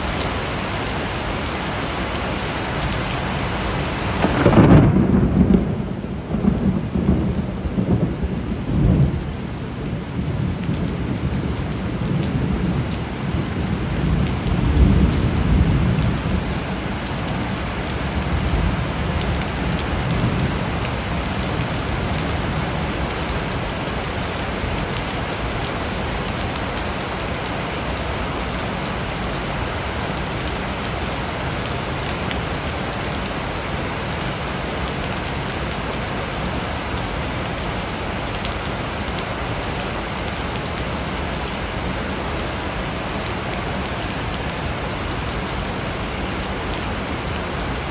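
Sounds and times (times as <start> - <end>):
heavy rain: 0.0 - 47.9
rolling thunder: 4.1 - 17.5.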